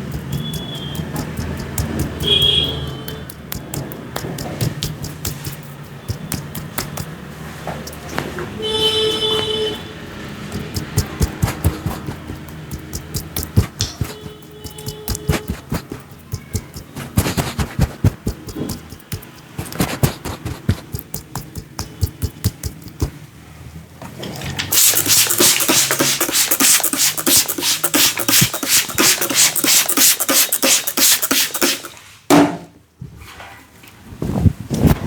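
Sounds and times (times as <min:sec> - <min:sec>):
hands tapping and slapping a head: 0:00.0 - 0:08.3, 0:10.4 - 0:23.2.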